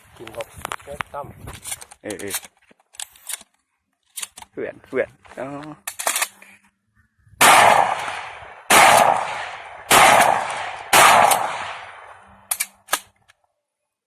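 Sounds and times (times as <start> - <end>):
shotgun shots echoing: 7.4 - 13.1.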